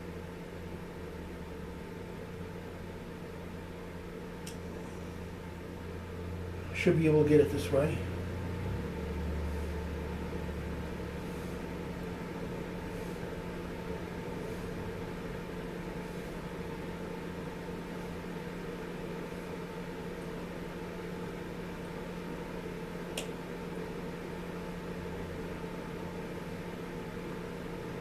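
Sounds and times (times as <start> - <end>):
steady background hum: 0.0 - 28.0
deep drone: 4.4 - 17.5.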